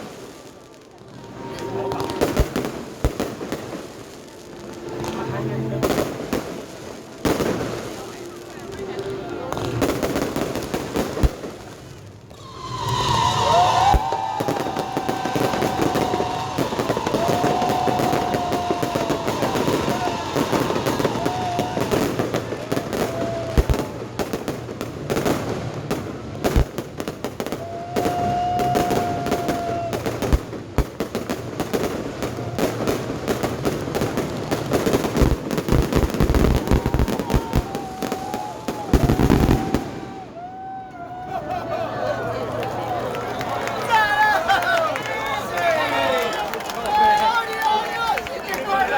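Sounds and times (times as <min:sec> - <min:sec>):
fireworks crackling: 0:00.0 - 0:40.8
fireworks whistling: 0:00.0 - 0:40.8
fireworks low booms: 0:09.5 - 0:40.6.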